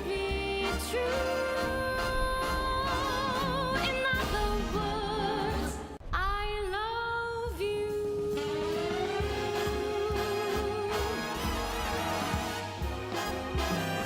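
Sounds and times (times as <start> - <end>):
slow ballad music: 7.8 - 14.0.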